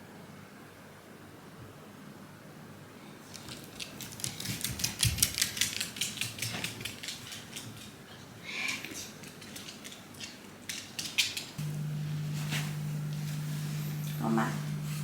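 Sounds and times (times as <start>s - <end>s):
dog claws clicking on hard floor: 3.3s - 11.6s.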